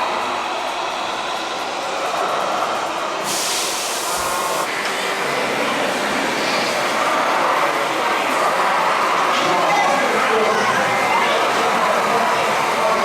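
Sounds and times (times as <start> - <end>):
burst of hiss: 3.2 - 4.7.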